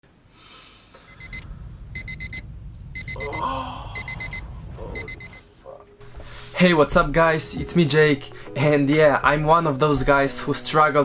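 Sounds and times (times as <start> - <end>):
low steady hum: 0.9 - 6.4
alarm clock beeping: 1.1 - 1.4, 2.0 - 2.4, 3.0 - 3.3, 4.0 - 4.4, 5.0 - 5.4.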